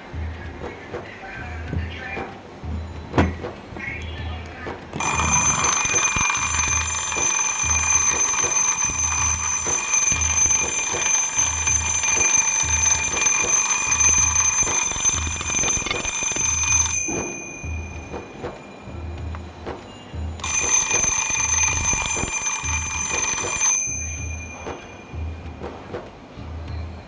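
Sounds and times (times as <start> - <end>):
alarm clock bells ringing: 5.0 - 25.6.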